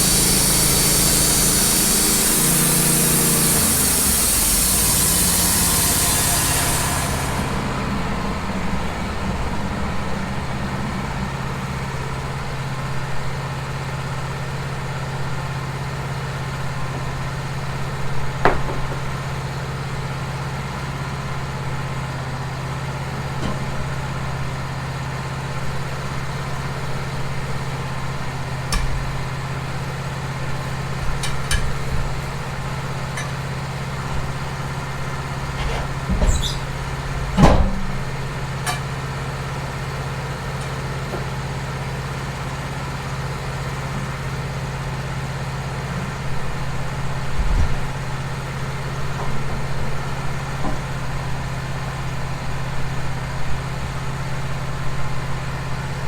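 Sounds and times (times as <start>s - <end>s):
saw blade hissing through log: 0.0s - 7.9s
sawmill engine running: 0.0s - 56.0s.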